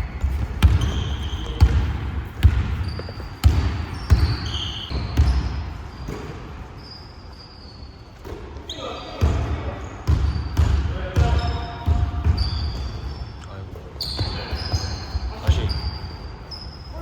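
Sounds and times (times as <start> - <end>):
basketball bouncing on gym floor: 0.0 - 6.5, 9.1 - 13.2, 14.0 - 16.0
sneaker squeaks: 0.0 - 17.0.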